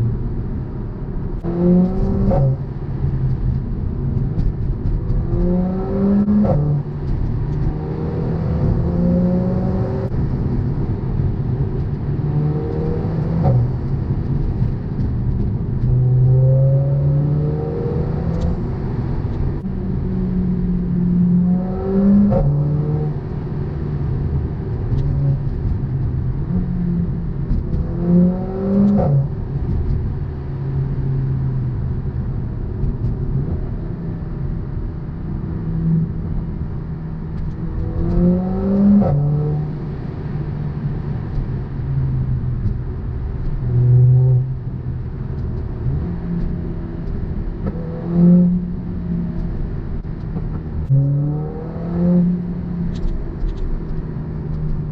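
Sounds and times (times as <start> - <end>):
car engine accelerating through gears: 0.0 - 54.9
exhaust crack on shifts: 1.3 - 8.9, 10.0 - 16.4, 24.0 - 33.8.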